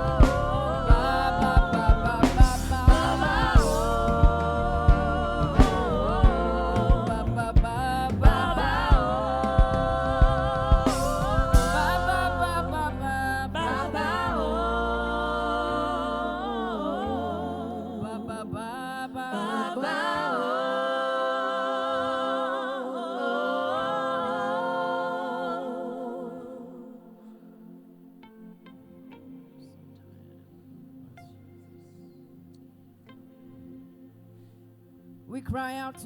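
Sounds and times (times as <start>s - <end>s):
sustained low notes: 0.0s - 18.6s.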